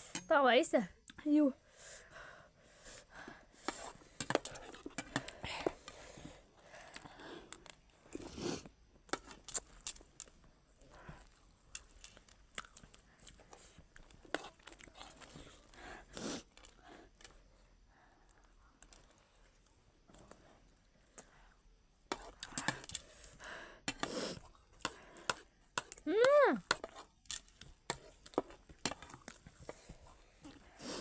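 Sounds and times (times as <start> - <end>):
crunching of puffed rice snack: 11.2 - 15.6.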